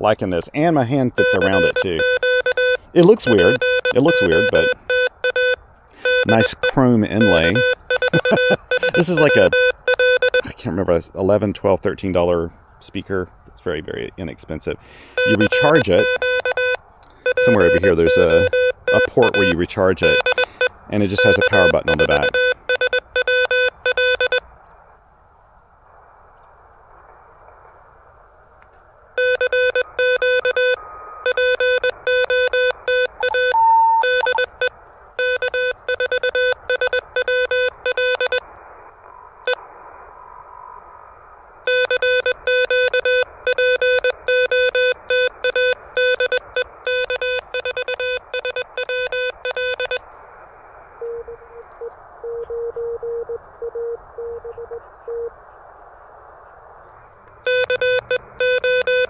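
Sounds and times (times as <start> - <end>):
faint morse signal: 1.1 - 10.5, 15.2 - 24.4, 29.2 - 38.5, 41.7 - 50.0, 51.0 - 55.4, 57.4 - 59.0
morse code keyed tone: 1.1 - 10.5, 15.2 - 24.4, 29.2 - 38.4, 41.7 - 50.0, 57.4 - 59.0.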